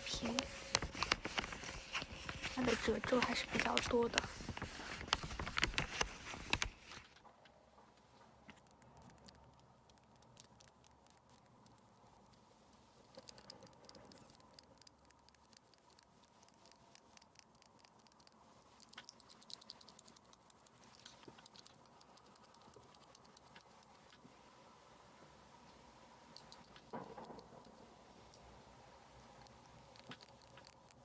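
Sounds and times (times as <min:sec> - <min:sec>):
paper crinkling: 0:00.0 - 0:07.2.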